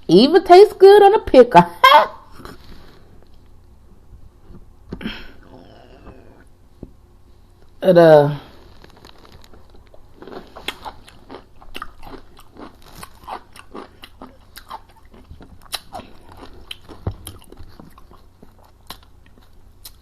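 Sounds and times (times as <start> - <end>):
person chewing and biting food: 8.7 - 20.0.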